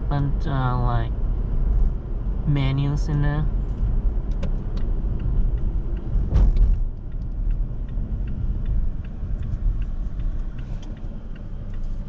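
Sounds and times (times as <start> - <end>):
engine and road rumble: 0.0 - 12.0
light regular ticking: 3.0 - 12.0.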